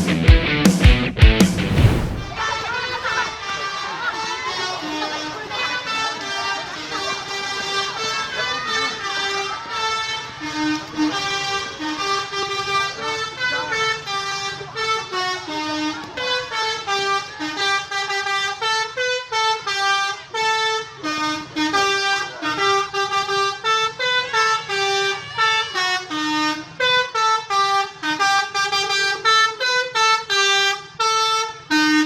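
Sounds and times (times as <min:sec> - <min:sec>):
bus horn playing melody: 0:10.3 - 0:32.0.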